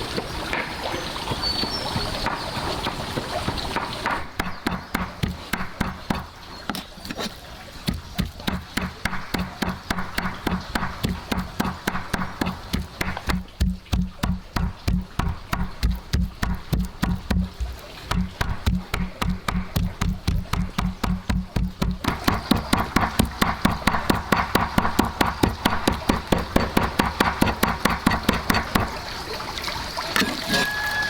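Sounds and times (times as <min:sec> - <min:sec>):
knife chopping on wooden board: 0:03.8 - 0:07.3, 0:07.9 - 0:29.0.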